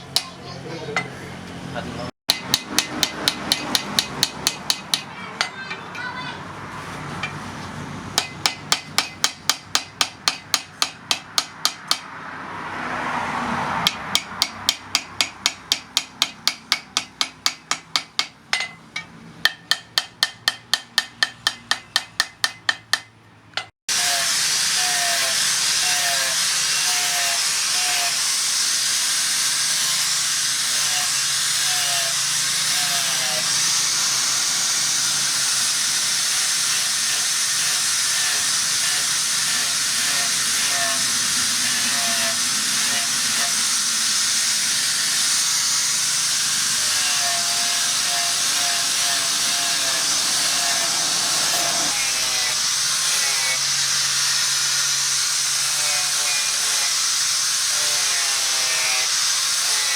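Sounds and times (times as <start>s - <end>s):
hammer ringing on anvil: 13.9s - 23.7s.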